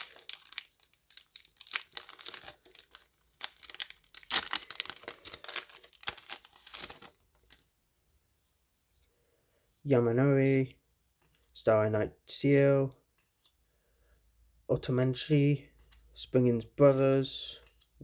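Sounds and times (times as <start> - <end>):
foil wrapper tearing and crinkling: 0.0 - 7.6.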